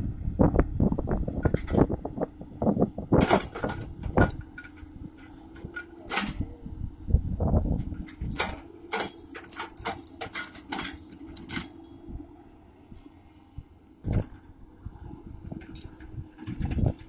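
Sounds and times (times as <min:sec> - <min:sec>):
excavator engine running: 0:00.0 - 0:17.0
metallic clanks and knocks: 0:03.2 - 0:06.5, 0:07.9 - 0:12.0, 0:15.5 - 0:17.0.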